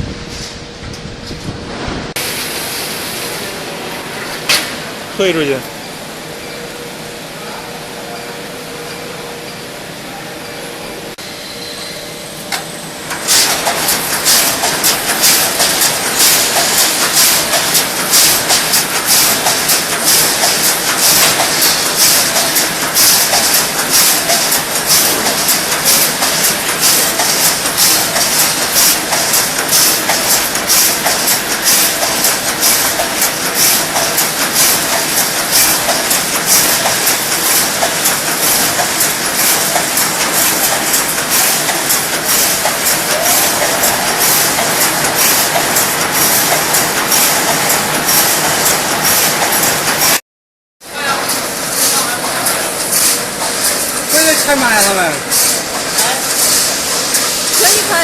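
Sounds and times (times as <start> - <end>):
welding machine strokes with hiss: 13.1 - 50.2, 51.3 - 58.0.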